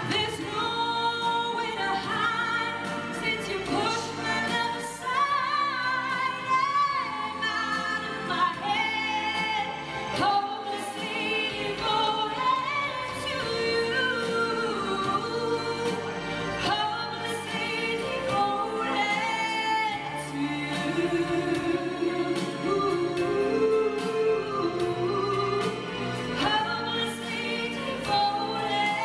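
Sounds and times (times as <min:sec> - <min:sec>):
choir singing: 0:00.0 - 0:29.0.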